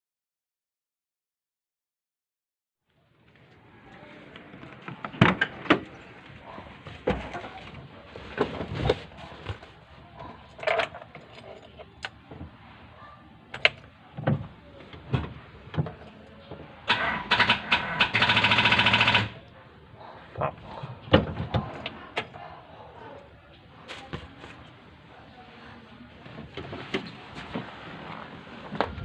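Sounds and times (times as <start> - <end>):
rapid clicking chatter: 16.9 - 19.4.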